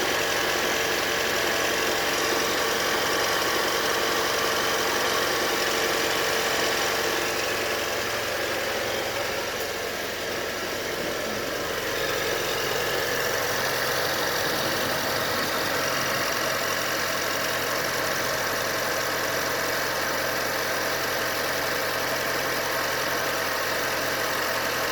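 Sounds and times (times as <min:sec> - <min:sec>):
engine squealing: 0:00.0 - 0:18.2
engine idling: 0:00.0 - 0:24.9.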